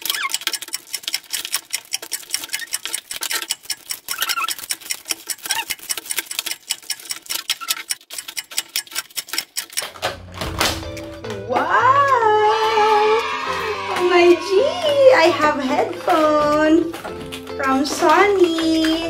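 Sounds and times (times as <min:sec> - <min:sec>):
short squeaky glides: 0:00.0 - 0:00.5, 0:04.0 - 0:05.8, 0:07.4 - 0:08.0
packaging crackling clicks: 0:00.0 - 0:11.4, 0:13.2 - 0:19.0.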